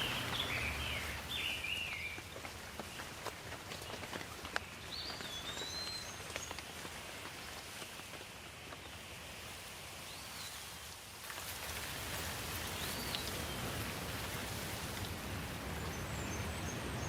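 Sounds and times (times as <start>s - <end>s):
raindrops ticking: 0.0s - 9.6s
rain hiss: 0.0s - 17.0s.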